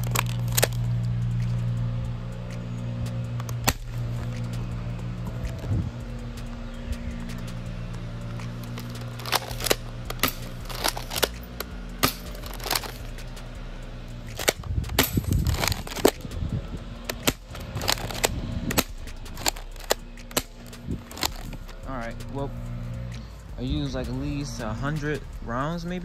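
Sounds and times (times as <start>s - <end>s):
airsoft shotgun racking and firing: 8.8s - 11.4s, 14.3s - 16.2s.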